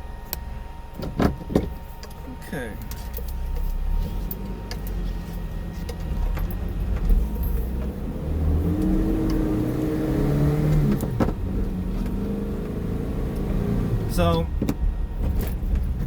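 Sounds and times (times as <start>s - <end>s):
road rumble: 0.0s - 16.0s
car engine accelerating: 3.6s - 16.0s.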